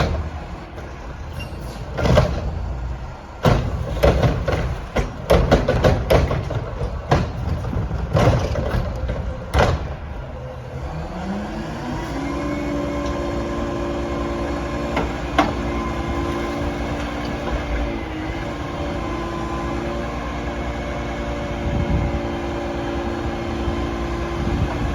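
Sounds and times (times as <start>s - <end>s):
metal clanks and bangs: 0.0s - 10.2s
garbage truck engine revving: 0.0s - 24.9s.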